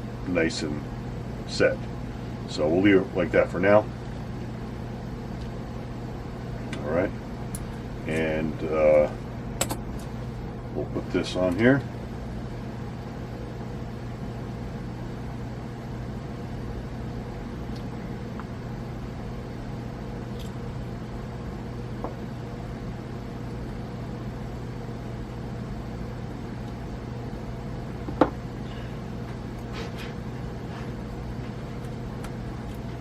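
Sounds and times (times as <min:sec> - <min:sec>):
low machinery hum: 0:00.0 - 0:33.0.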